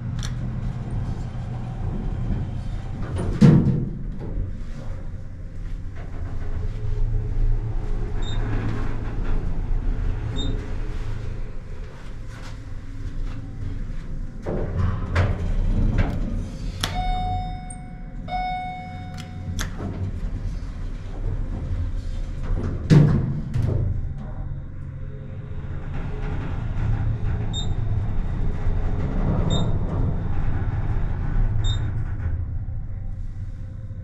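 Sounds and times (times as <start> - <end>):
elevator humming: 4.5 - 22.0
elevator two-tone chime: 16.8 - 19.7
elevator clicks: 16.8 - 20.2.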